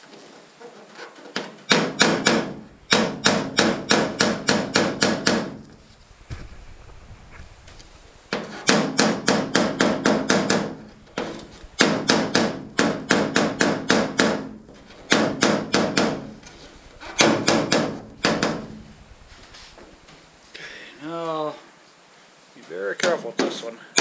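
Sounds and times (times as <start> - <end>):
hammer tapping metal hull: 1.7 - 5.8, 8.3 - 20.2.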